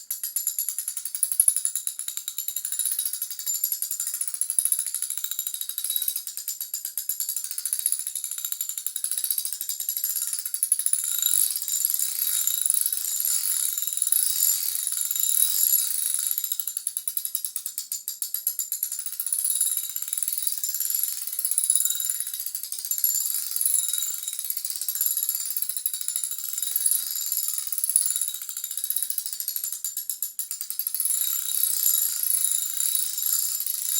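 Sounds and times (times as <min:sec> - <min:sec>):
ratchet wrench clicking: 0:30.1 - 0:33.9.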